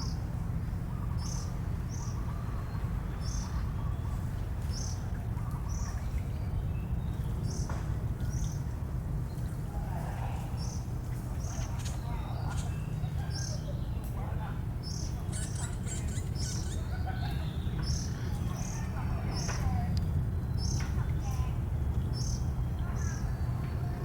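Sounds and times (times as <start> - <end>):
steady low rumble: 0.0 - 24.0
small bird chirping: 11.4 - 14.0, 14.8 - 18.8.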